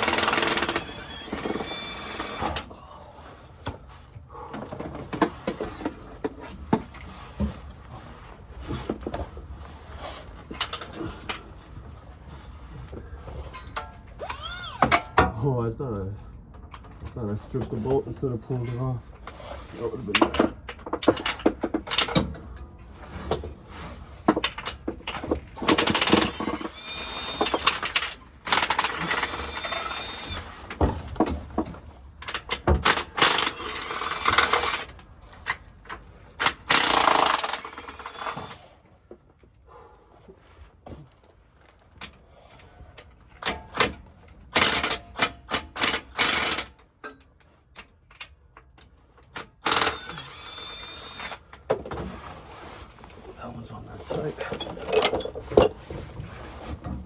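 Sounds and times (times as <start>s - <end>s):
impact wrench hammering: 0.0s - 2.6s
clinks of tools and metal parts: 13.4s - 15.4s, 20.1s - 23.6s, 43.0s - 50.2s, 51.2s - 52.2s, 54.3s - 56.0s.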